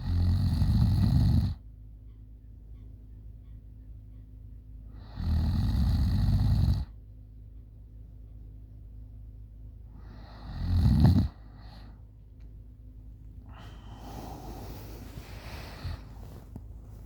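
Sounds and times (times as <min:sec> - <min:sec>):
woman snoring: 0:00.0 - 0:01.6, 0:05.0 - 0:06.9, 0:10.0 - 0:11.4, 0:13.5 - 0:16.1
soft breathy breath: 0:13.4 - 0:17.0.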